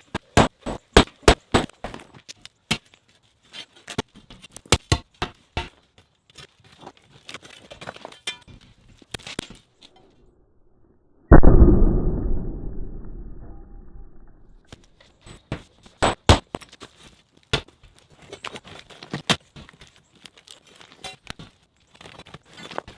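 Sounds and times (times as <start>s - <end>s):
sledgehammer breaking concrete: 0.2s - 2.1s, 16.0s - 16.5s
muffled low rumble: 11.3s - 14.7s.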